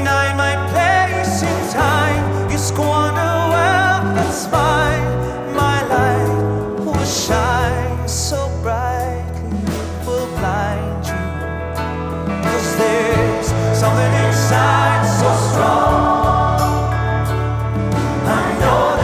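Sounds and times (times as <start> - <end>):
low bass notes: 0.0 - 19.0
slow song with wavering melody: 0.0 - 19.0.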